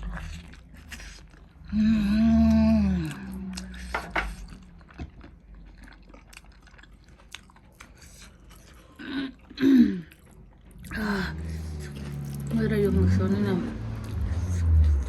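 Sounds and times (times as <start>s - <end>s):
vocal hum: 0.0s - 4.8s
chewing and crunching food: 0.0s - 15.0s.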